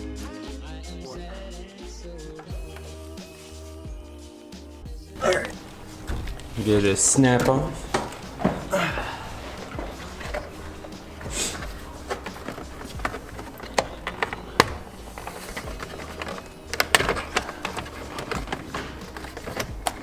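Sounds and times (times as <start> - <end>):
background music: 0.0 - 20.0
plastic trim clicks and knocks: 5.4 - 20.0.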